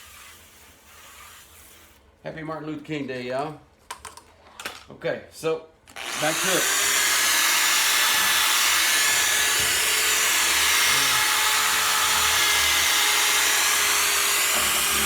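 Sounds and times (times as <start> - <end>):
power sander whirring: 6.0 - 15.0.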